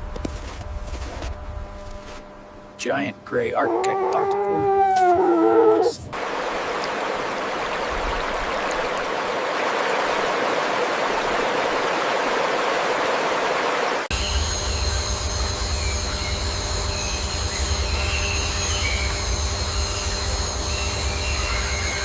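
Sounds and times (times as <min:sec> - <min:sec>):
animal whining call: 0:03.6 - 0:06.1
running water rushing: 0:06.1 - 0:14.1.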